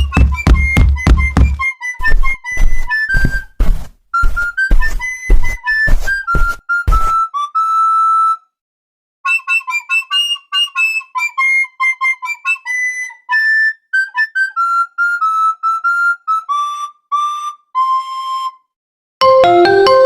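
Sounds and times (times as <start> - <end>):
flute-like wind instrument melody: 0.0 - 3.6, 4.2 - 8.6, 9.3 - 20.0
fuller music with lower notes: 19.2 - 20.0.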